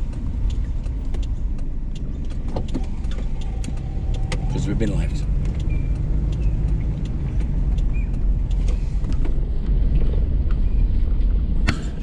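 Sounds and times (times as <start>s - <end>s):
faint clicks: 0.0s - 9.5s
car engine and road rumble: 0.0s - 12.0s.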